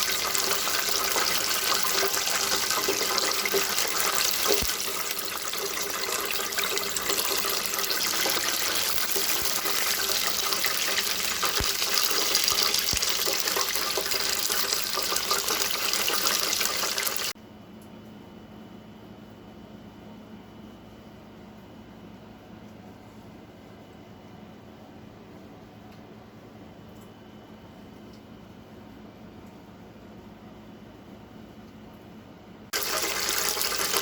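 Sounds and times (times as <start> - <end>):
water running from a tap: 0.0 - 17.4, 32.8 - 34.0.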